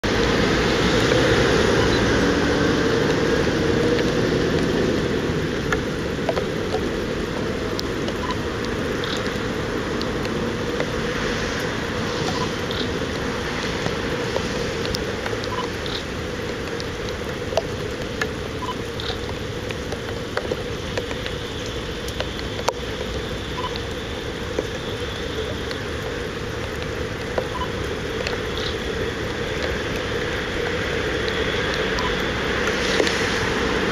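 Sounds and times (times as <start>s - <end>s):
sharp clicks: 18.2s - 21.3s.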